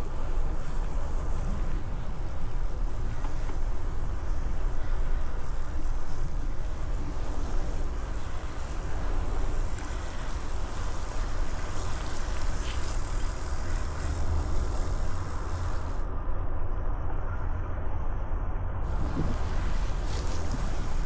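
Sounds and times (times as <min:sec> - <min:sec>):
wind rushing over microphone: 0:00.0 - 0:21.0.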